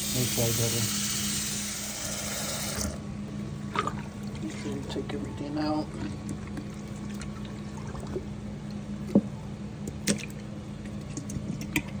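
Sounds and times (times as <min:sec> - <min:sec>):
wet squishing and dripping: 0:09.8 - 0:12.0.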